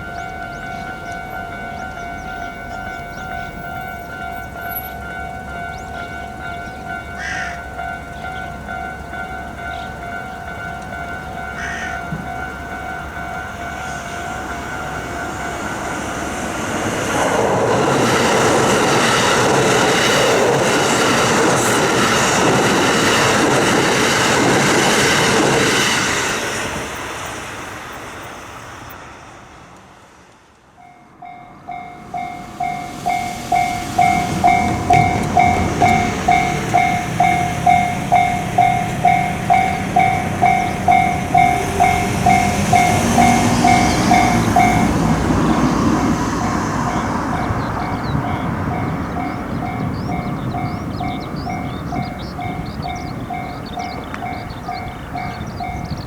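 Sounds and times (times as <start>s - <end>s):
level crossing warning bell: 0.0s - 25.8s, 30.8s - 56.0s
train passing: 0.0s - 56.0s.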